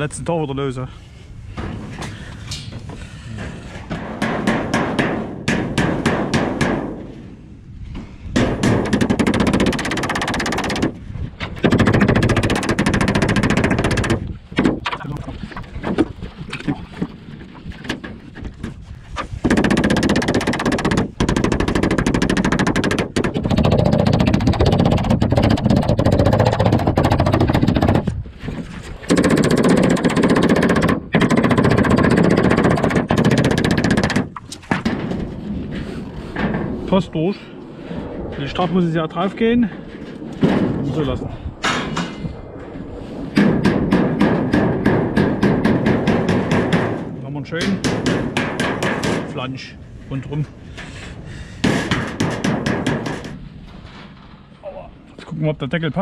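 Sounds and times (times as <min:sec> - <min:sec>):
sharp knocks: 0:02.7 - 0:07.1, 0:08.3 - 0:15.2, 0:17.8 - 0:28.2, 0:43.3 - 0:49.4, 0:51.6 - 0:53.4.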